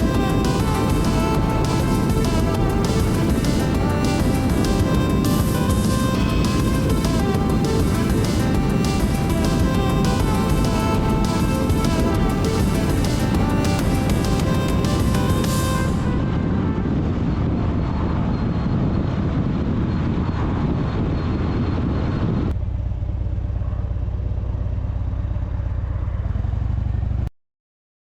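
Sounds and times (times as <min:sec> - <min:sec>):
motorcycle engine running: 0:00.0 - 0:16.4, 0:22.6 - 0:27.3
wind and road noise: 0:00.0 - 0:27.3.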